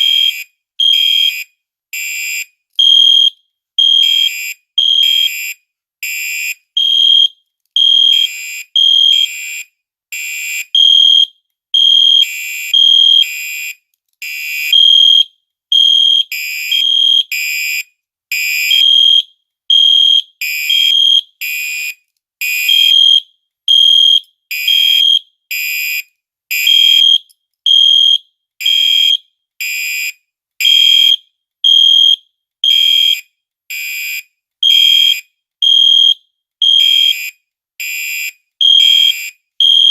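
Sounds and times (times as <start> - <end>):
fire alarm pulsing tones: 26.6 - 29.2, 34.6 - 37.2, 37.8 - 39.9.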